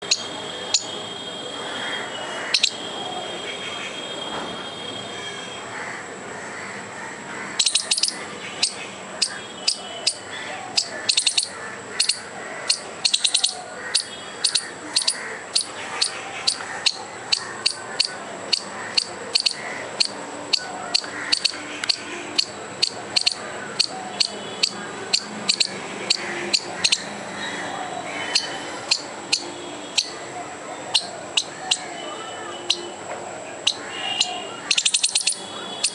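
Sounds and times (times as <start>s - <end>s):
squirrel alarm chirps: 0.0s - 1.0s, 2.4s - 3.0s, 7.6s - 27.2s, 28.0s - 30.2s, 30.8s - 33.0s, 33.6s - 35.9s.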